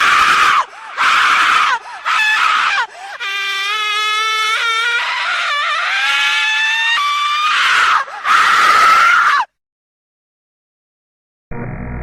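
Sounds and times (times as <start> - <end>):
high-pitched shrieking: 0.0 - 9.5.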